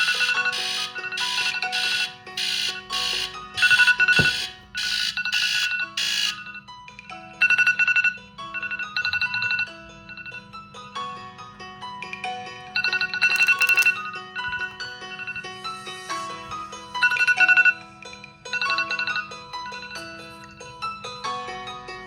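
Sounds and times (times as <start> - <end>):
smartphone alarm tones: 0.0 - 6.8, 12.8 - 16.2, 16.9 - 20.6.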